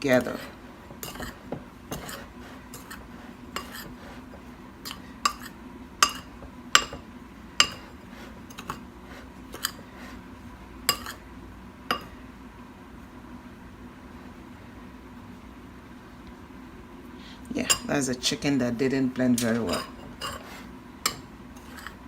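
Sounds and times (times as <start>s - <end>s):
faint steady hum: 0.0s - 22.0s
utensil clinking against mixing bowl: 1.0s - 4.0s, 4.8s - 7.0s, 7.6s - 7.9s.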